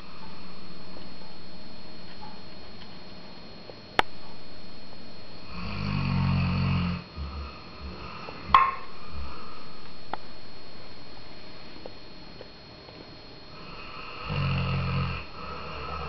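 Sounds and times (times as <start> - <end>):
animal snoring: 5.4 - 9.7, 13.5 - 16.0.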